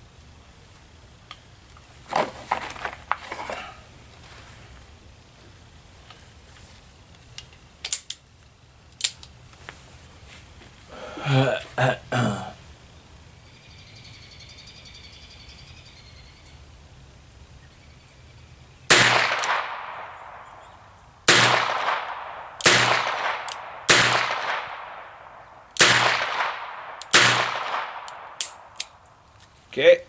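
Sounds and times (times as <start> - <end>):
revolver shots with echo: 18.9 - 28.7.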